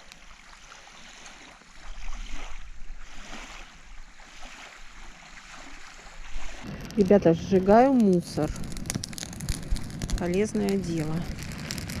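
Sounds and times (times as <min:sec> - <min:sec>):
small waves washing on shore: 0:00.0 - 0:12.0
wind rumble on microphone: 0:04.9 - 0:12.0.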